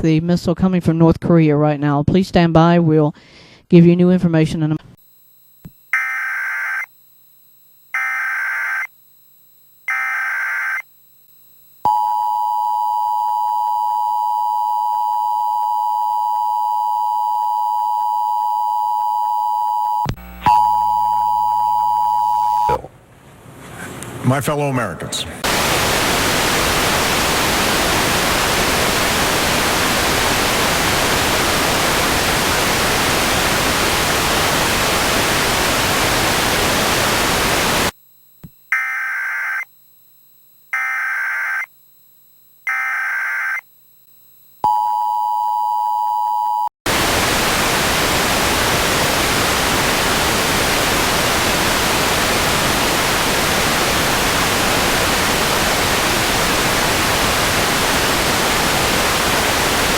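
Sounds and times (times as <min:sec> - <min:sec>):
two-tone attention signal: 0:06.0 - 0:06.9
static hiss: 0:25.4 - 0:38.0, 0:46.9 - 0:59.9.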